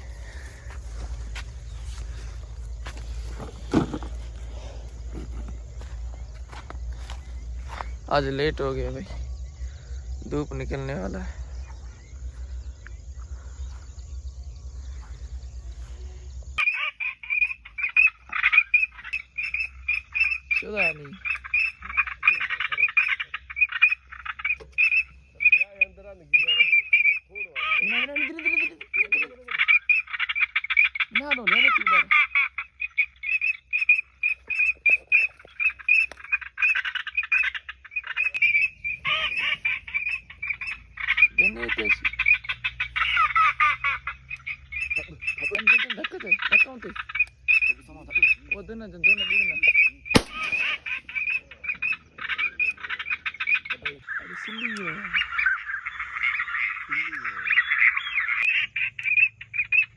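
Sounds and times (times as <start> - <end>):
ducks quacking: 0.0 - 9.1, 16.1 - 59.9
frogs chorus croaking: 0.0 - 59.9
low bending frog calls: 0.0 - 59.9
sharp crack: 50.1 - 51.4.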